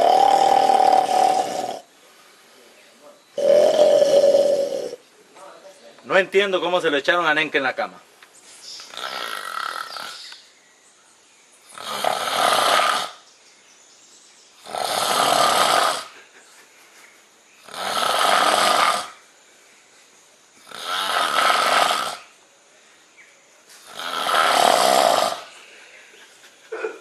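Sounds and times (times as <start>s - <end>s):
man snoring loudly: 0.0s - 1.9s, 3.4s - 5.0s, 8.9s - 10.2s, 11.7s - 13.2s, 14.6s - 16.1s, 17.6s - 19.2s, 20.6s - 22.3s, 23.8s - 25.5s.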